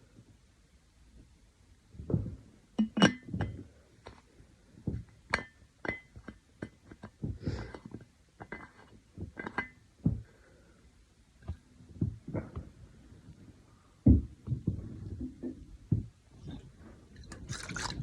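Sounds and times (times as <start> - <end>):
glass clinking: 2.8 - 3.6, 5.3 - 6.2
dull low knocks: 14.0 - 16.2.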